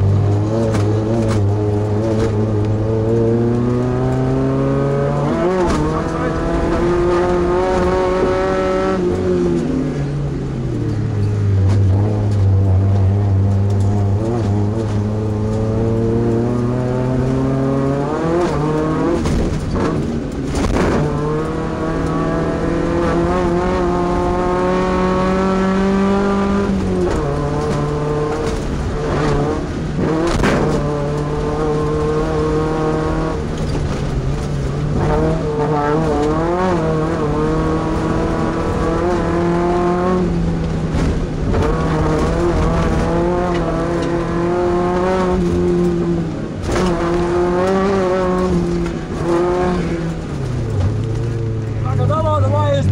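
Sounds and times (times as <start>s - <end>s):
truck engine racing: 0.0s - 52.9s
sharp knocks over rough ground: 5.2s - 8.2s, 18.3s - 21.6s, 26.5s - 31.3s.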